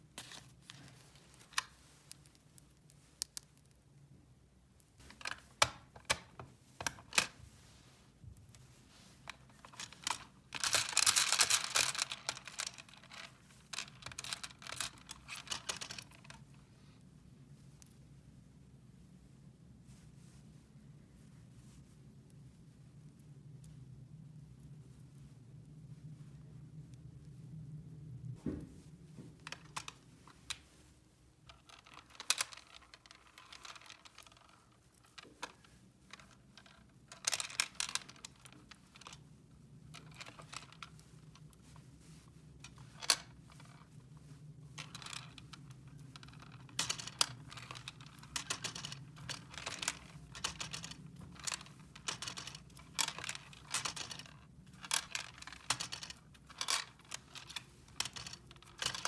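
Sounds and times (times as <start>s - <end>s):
plastic toy pieces clicking: 9.6s - 16.2s, 37.2s - 39.2s, 43.0s - 43.2s, 46.2s - 59.0s.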